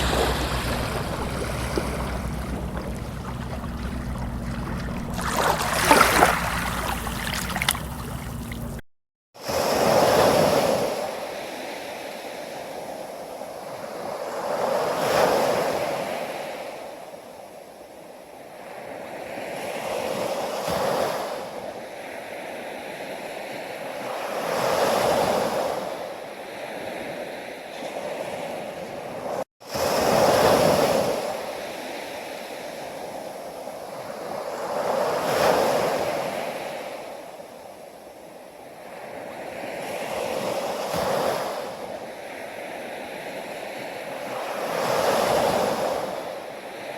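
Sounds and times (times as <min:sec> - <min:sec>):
low steady hum: 0:00.0 - 0:08.8
ocean waves breaking: 0:00.0 - 0:08.8
water splashing: 0:00.0 - 0:08.8.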